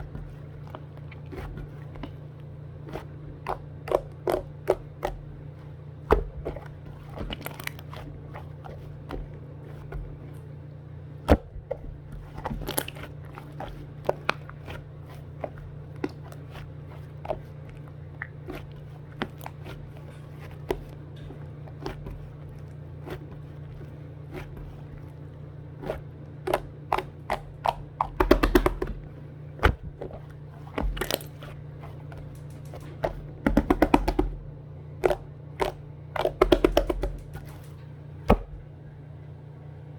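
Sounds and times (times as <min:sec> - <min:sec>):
steady low hum: 0:00.0 - 0:39.9
handling clicks and crunches: 0:11.4 - 0:34.4, 0:35.0 - 0:38.6.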